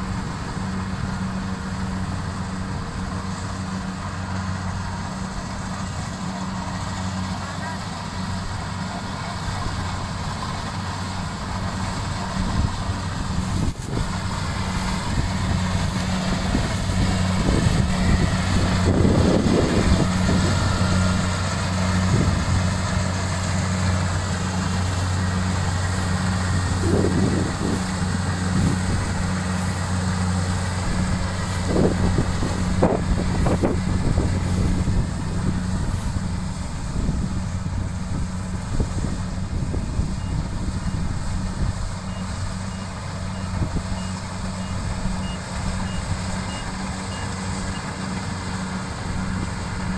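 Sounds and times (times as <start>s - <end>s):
engine humming: 0.0s - 49.9s.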